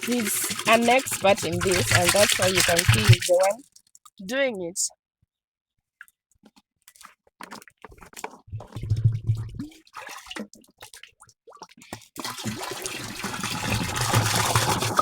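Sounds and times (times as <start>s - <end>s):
water pouring into container: 0.0s - 3.7s, 7.0s - 15.0s.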